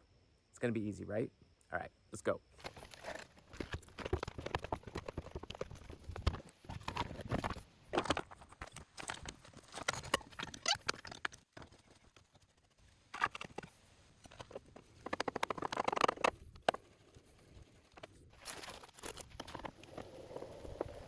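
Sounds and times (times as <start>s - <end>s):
hard objects clicking and clattering: 2.6s - 12.4s.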